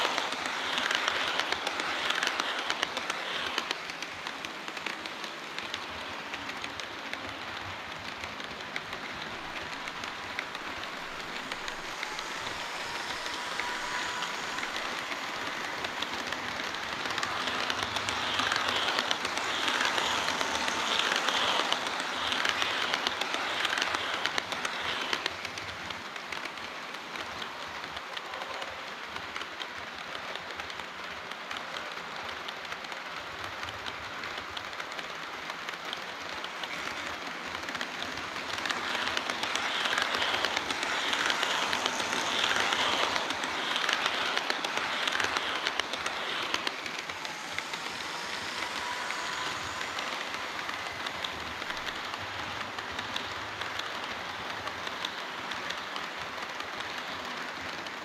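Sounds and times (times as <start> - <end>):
model train wheels clattering: 0.0 - 58.0.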